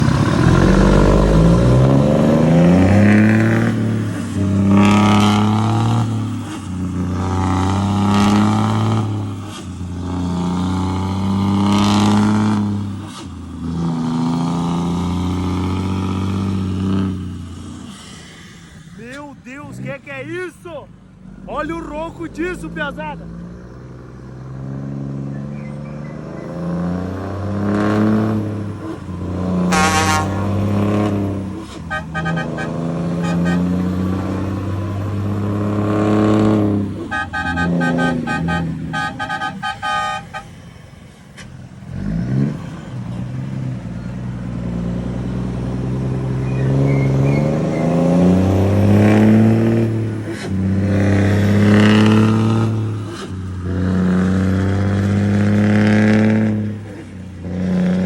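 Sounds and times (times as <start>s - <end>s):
truck engine revving: 0.0s - 58.0s
horn-like tones: 29.6s - 31.2s, 31.9s - 34.0s, 37.0s - 40.5s.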